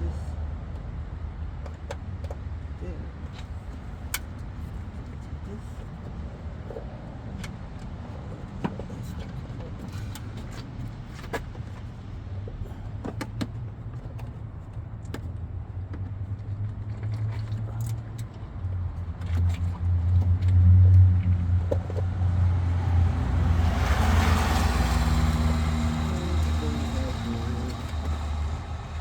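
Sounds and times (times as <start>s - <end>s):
low steady rumble: 13.7s - 29.0s.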